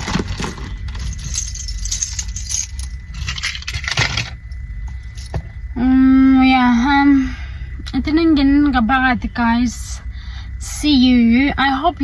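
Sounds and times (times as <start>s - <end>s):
small hard objects clinking: 0.0s - 4.3s
steady low rumble: 0.0s - 12.0s.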